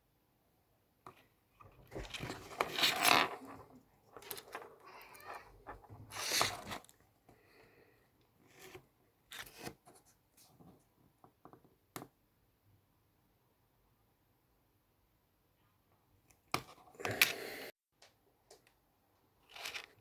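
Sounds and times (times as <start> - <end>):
rustling and scraping: 1.2 - 7.0, 19.4 - 20.0.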